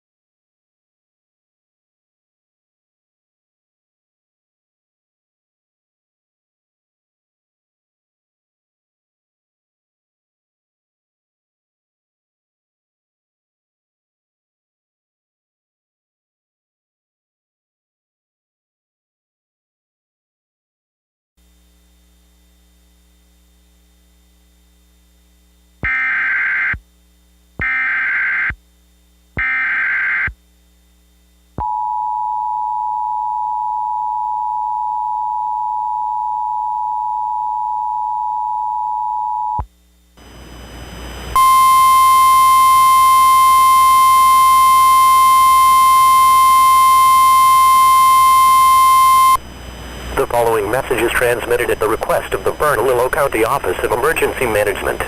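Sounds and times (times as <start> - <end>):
static: 21.4 - 31.6, 39.5 - 55.0
digital data bursts: 25.8 - 26.8, 27.6 - 28.6, 29.4 - 30.3
single steady tone: 29.4 - 40.4, 41.3 - 49.5
two-tone attention signal: 41.4 - 49.4.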